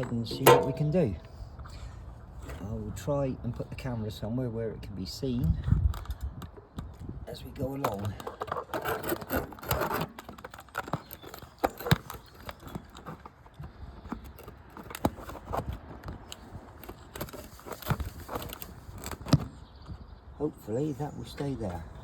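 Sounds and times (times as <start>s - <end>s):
camera being handled: 7.9s - 19.5s.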